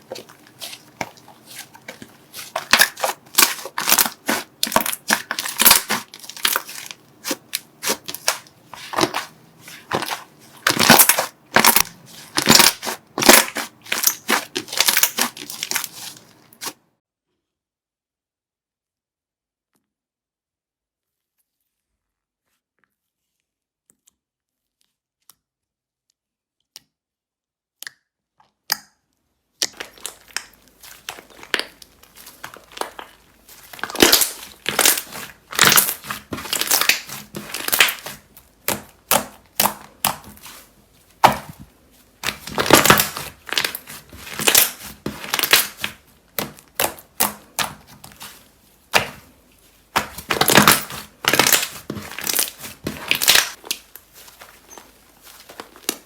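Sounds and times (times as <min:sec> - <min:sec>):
crunchy slime crackling: 0:00.0 - 0:16.8, 0:29.6 - 0:56.0.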